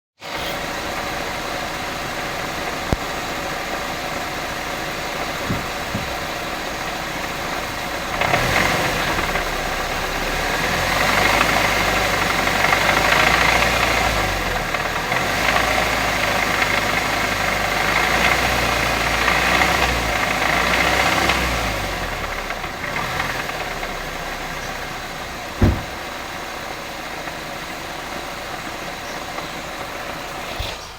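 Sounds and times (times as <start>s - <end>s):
car engine idling with knocking: 0.6s - 30.9s
engine revving: 4.0s - 27.2s
sharp thump: 5.4s - 6.3s, 25.6s - 26.1s.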